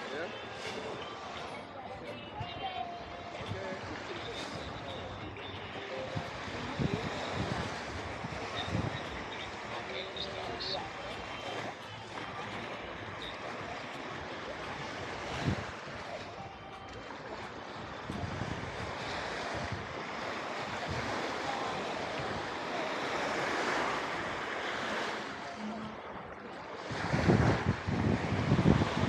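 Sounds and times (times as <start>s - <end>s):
waves washing onto beach: 0.0s - 29.0s
wind buffeting microphone: 3.4s - 11.2s, 17.0s - 25.0s, 25.7s - 29.0s.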